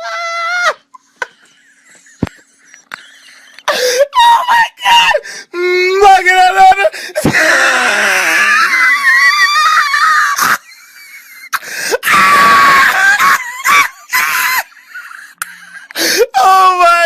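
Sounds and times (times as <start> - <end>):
person wheezing shrieks: 7.0 - 10.8, 11.5 - 15.2.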